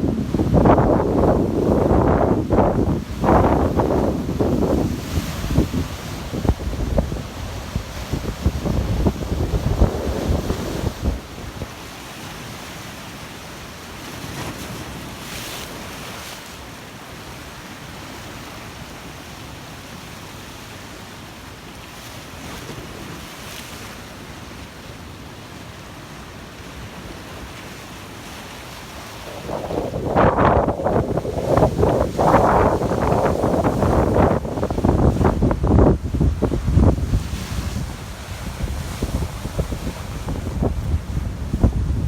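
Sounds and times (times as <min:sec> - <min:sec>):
wind buffeting microphone: 0:00.0 - 0:11.8, 0:29.0 - 0:42.0
sea waves breaking: 0:00.0 - 0:42.0.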